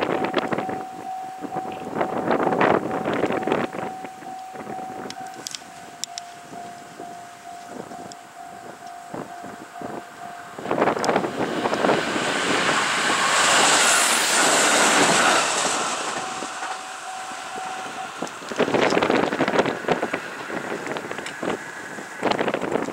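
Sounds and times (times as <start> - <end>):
crossing warning bell ringing: 0.0 - 22.9
diesel train passing: 0.0 - 22.9
train wheels clattering: 10.7 - 21.6.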